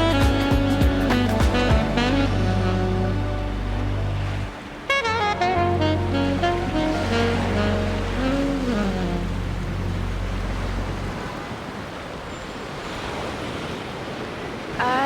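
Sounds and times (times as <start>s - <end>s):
background song: 0.0s - 9.8s
ocean surf washing onto beach: 0.0s - 15.0s.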